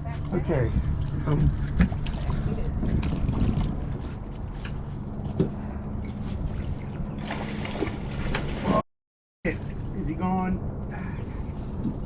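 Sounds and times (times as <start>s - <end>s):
low motor hum: 0.0s - 8.8s
water lapping against boat hull: 0.2s - 8.8s
wind on microphone: 0.4s - 8.6s.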